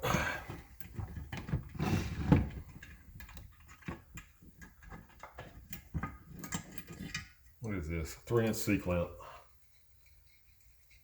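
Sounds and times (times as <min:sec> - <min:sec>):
metal tools scraping: 0:05.1 - 0:07.5, 0:09.6 - 0:11.0.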